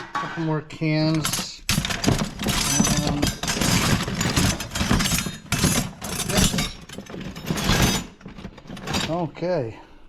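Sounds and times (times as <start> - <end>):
scrap metal clattering: 0.0 - 9.5.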